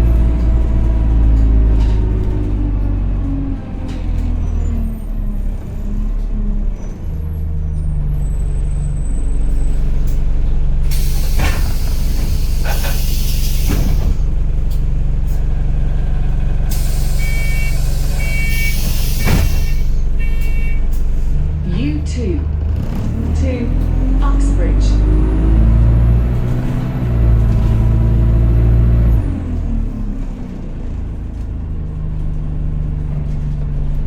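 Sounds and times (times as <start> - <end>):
bus diesel engine: 0.0 - 34.0
air brake hisses: 10.9 - 14.2, 16.7 - 20.6
electronic door beeps: 17.2 - 18.8.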